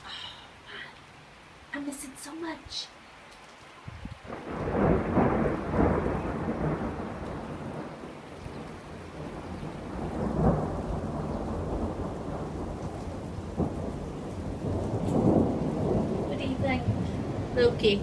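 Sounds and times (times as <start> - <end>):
thunder rumbling: 3.9 - 18.0.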